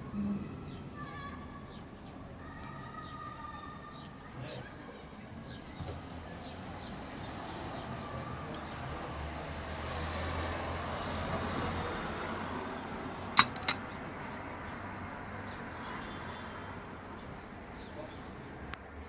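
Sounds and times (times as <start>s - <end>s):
low rumble of passing vehicle: 6.3s - 17.8s.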